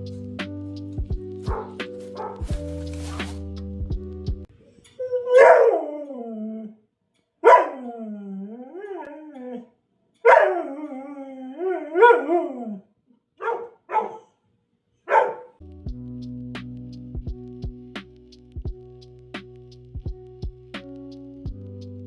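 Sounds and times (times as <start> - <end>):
background music: 0.0 - 4.5, 15.6 - 22.0
dog yelping: 1.5 - 2.4, 5.0 - 5.9, 7.4 - 8.0, 8.8 - 10.8, 12.0 - 12.5, 13.4 - 14.3, 15.1 - 15.6
dog howling: 5.0 - 6.8, 7.4 - 9.7, 10.3 - 12.8.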